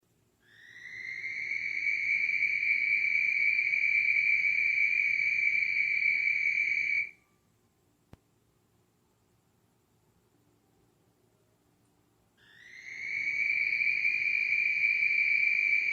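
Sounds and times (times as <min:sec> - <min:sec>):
faint click: 0:08.1 - 0:08.3.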